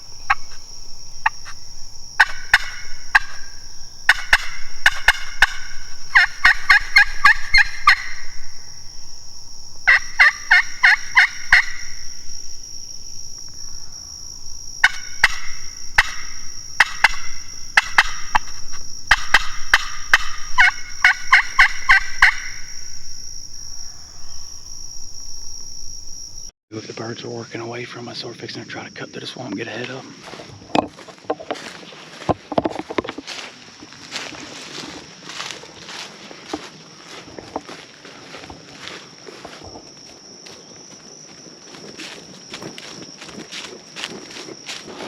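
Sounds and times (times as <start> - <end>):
turkey yelping: 0.0 - 0.6, 2.2 - 8.5, 9.9 - 12.1, 14.8 - 22.8
insects droning: 0.0 - 45.0.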